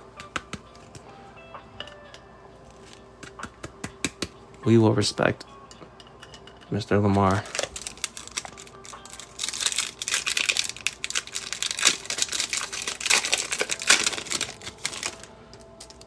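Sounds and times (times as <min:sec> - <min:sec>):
card pack wrapper crinkling: 0:07.2 - 0:16.0.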